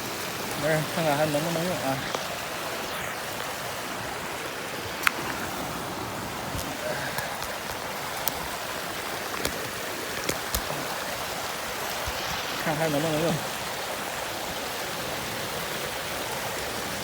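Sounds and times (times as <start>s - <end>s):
stream running: 0.0s - 17.0s
sharp clicks: 9.2s - 10.7s.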